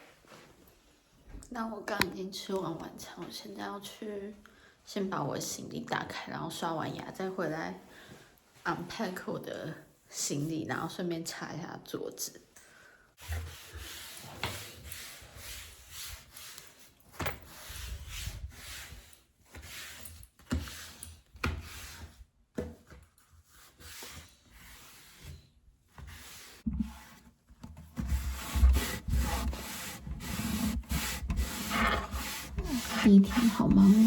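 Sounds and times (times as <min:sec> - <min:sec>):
cloth rubbing wooden furniture: 0:28.0 - 0:34.0.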